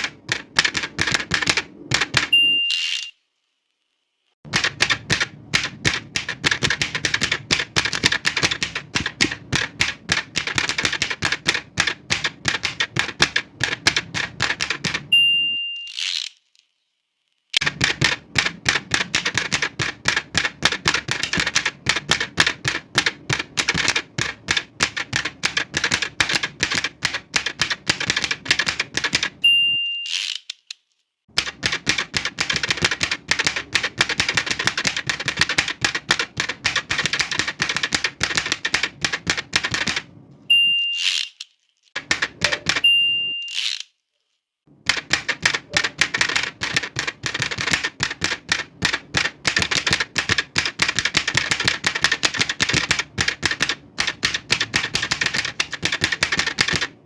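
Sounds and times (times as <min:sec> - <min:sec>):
typewriter key strikes: 0:00.0 - 0:02.4, 0:04.5 - 0:15.2, 0:17.6 - 0:29.4, 0:31.4 - 0:40.1, 0:42.0 - 0:43.0, 0:44.9 - 0:57.0
typewriter carriage return: 0:00.0 - 0:03.1, 0:04.5 - 0:15.2, 0:15.8 - 0:16.4, 0:17.6 - 0:29.4, 0:30.0 - 0:40.1, 0:40.9 - 0:43.9, 0:44.9 - 0:57.0
typewriter bell ding: 0:15.1 - 0:15.9, 0:29.4 - 0:30.1, 0:40.5 - 0:41.0, 0:42.4 - 0:43.6.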